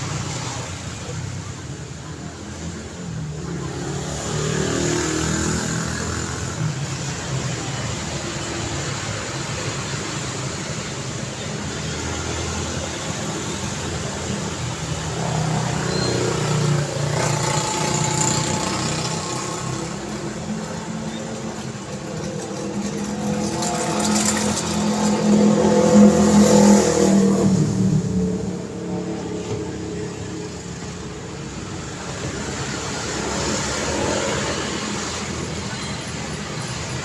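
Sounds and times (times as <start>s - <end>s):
tyre and road noise: 0.0s - 37.0s
vehicles accelerating past: 0.0s - 37.0s.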